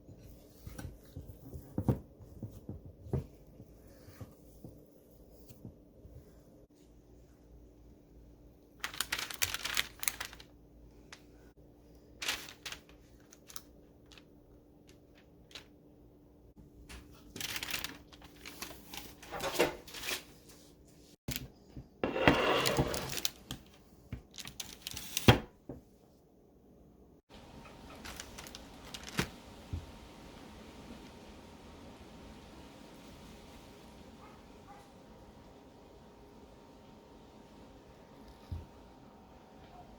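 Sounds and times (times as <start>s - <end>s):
rustling: 8.8s - 15.8s, 17.0s - 20.9s, 27.6s - 30.0s.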